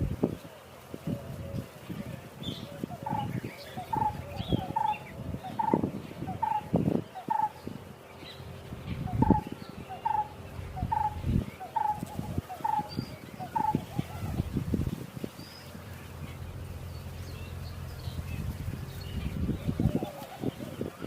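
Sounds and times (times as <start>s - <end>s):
small birds chirping: 0.0s - 21.0s
bird repeating short call: 2.9s - 7.6s, 9.0s - 14.4s.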